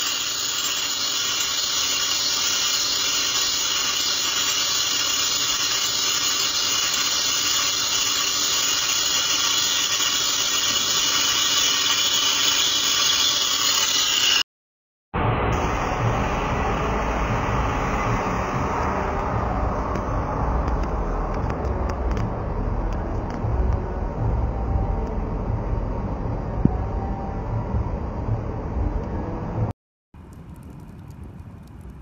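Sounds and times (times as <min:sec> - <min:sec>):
lathe hissing whir: 0:00.0 - 0:14.4, 0:15.5 - 0:27.1
faint high tone: 0:23.4 - 0:28.2.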